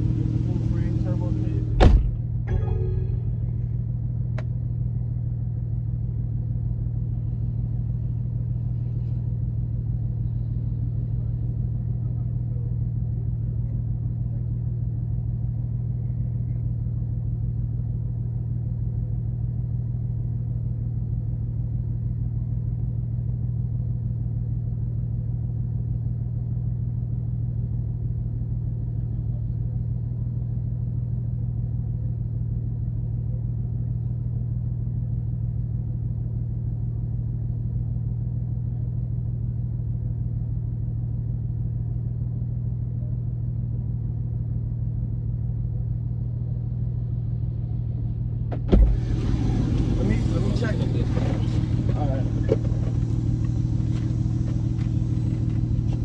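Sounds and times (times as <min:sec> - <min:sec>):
car engine running: 0:00.0 - 0:15.0, 0:44.0 - 0:56.0.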